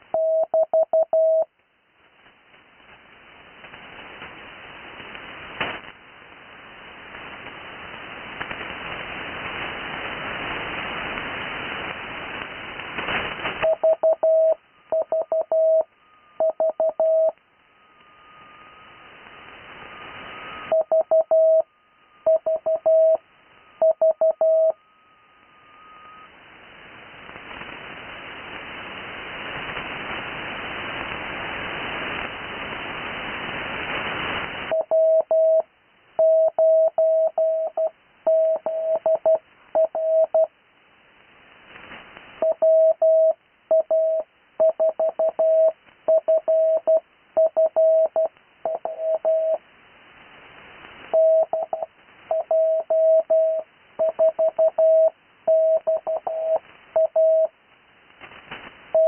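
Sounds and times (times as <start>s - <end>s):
radio static hiss: 0.0s - 59.0s
morse code beeps: 0.1s - 1.5s, 13.6s - 19.0s, 20.4s - 26.3s, 34.7s - 40.5s, 42.4s - 49.6s, 51.2s - 57.5s.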